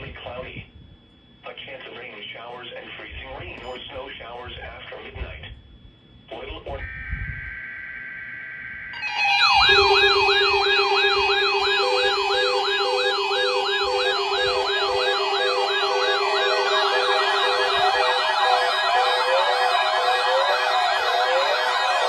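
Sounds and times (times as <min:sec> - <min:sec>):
steady low tone: 0:02.5 - 0:18.9
electronic siren yelping: 0:06.4 - 0:22.0
faster siren layer: 0:06.7 - 0:22.0.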